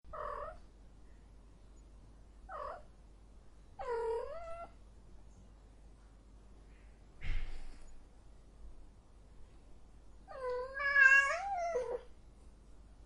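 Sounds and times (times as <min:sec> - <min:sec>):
cat yowling: 0:10.3 - 0:12.1.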